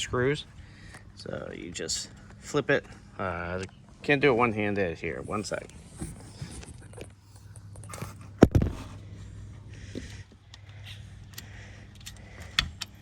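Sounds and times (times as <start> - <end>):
light clicks and rattles: 10.0 - 13.0.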